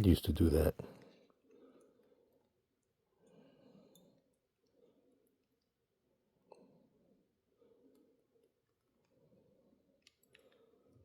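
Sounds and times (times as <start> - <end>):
faint small clicks of parts and tools: 2.8 - 4.8, 10.0 - 11.0.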